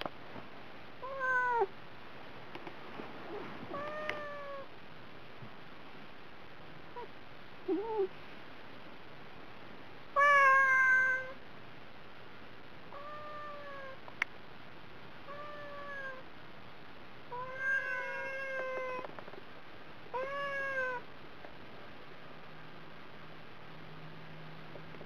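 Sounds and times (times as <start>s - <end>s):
cat meowing: 1.0s - 1.7s, 3.7s - 4.7s, 10.2s - 11.4s, 12.9s - 14.0s, 15.3s - 16.2s, 17.3s - 19.0s, 20.2s - 21.0s.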